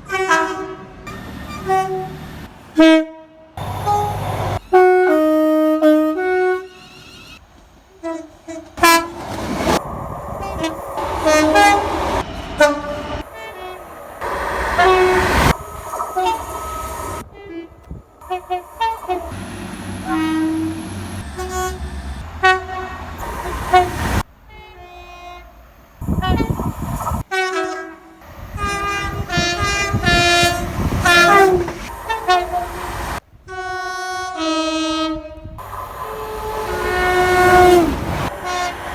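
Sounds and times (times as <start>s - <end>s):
two-tone train horn blasts: 0.0s - 2.2s, 2.8s - 7.0s, 7.9s - 9.8s, 10.4s - 38.9s
train running rumble: 3.6s - 24.8s, 28.3s - 33.2s, 35.6s - 38.9s.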